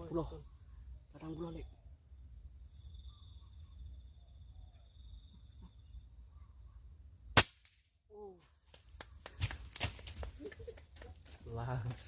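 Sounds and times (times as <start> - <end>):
high insect drone: 0.0 - 7.4
gunshot crack: 7.4 - 7.8.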